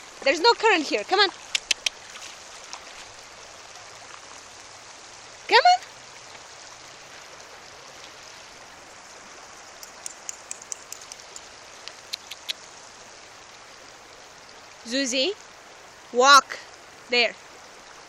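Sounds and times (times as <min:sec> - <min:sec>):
river water hissing: 0:00.0 - 0:18.0
small sharp clicks: 0:01.5 - 0:02.0, 0:09.7 - 0:12.6.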